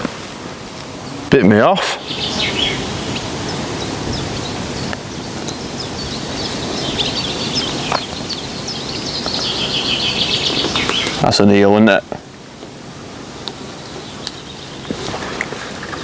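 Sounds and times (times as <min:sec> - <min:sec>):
steady rushing noise: 0:00.0 - 0:15.3
small birds chirping: 0:00.8 - 0:12.0, 0:13.1 - 0:16.0.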